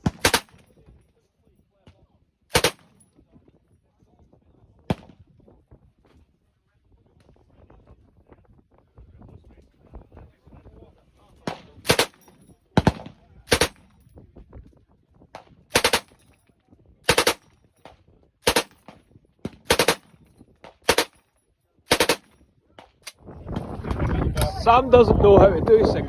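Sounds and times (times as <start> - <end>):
automatic gunfire bursts: 0.0 - 0.6, 2.5 - 2.9, 11.9 - 12.2, 12.8 - 13.8, 15.7 - 16.2, 17.1 - 17.4, 18.4 - 18.8, 19.7 - 20.1, 20.9 - 21.1, 21.9 - 22.3
single gunshots: 0.0 - 0.6, 2.5 - 3.0, 11.5 - 12.2, 12.8 - 13.8, 15.7 - 16.2, 17.1 - 17.4, 18.4 - 18.9, 19.6 - 20.1, 20.8 - 21.1, 21.9 - 22.3.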